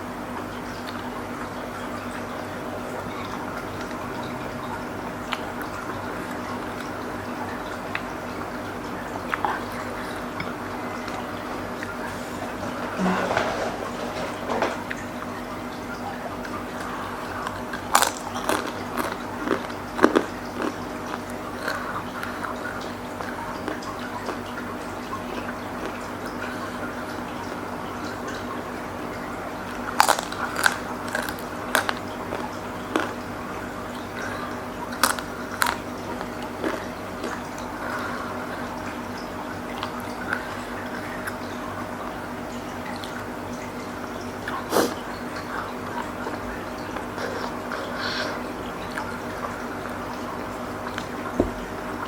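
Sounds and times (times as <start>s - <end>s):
person biting and chewing: 17.3s - 22.4s, 29.8s - 33.2s, 35.0s - 37.4s.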